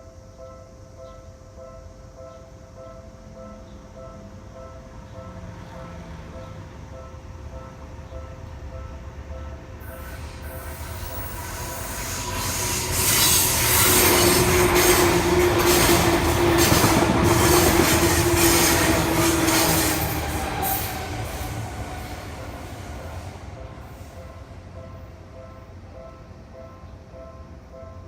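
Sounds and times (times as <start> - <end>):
electric train rumble: 0.0 - 28.0
train whine: 2.7 - 28.0.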